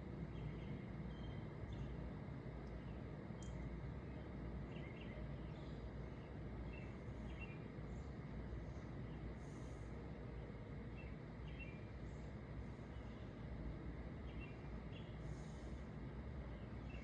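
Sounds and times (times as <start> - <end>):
low outdoor background noise: 0.0 - 17.0
faint bird chirps: 0.3 - 2.0, 10.9 - 13.4, 14.2 - 15.8.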